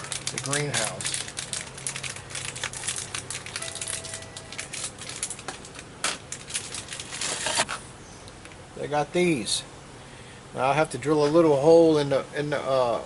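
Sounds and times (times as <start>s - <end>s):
packaging crinkling and clicking: 0.0s - 7.8s.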